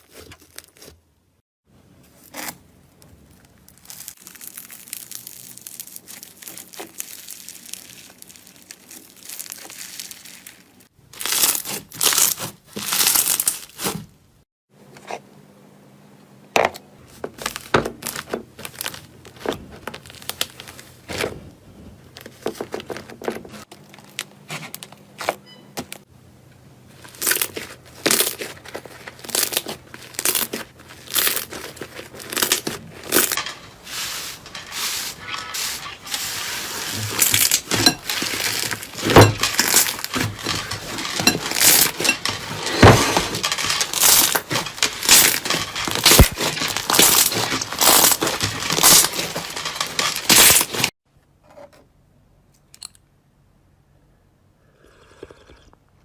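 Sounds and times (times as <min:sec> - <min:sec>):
crunchy material crackling: 0:02.1 - 0:14.1, 0:17.1 - 0:24.9, 0:26.9 - 0:51.0.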